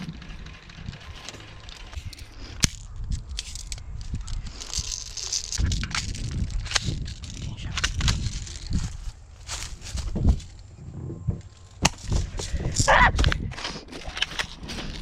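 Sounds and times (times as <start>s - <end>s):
crunching through dry leaves: 0.0s - 10.8s
gear rattling: 0.0s - 10.8s
twig snapping: 2.6s - 9.7s.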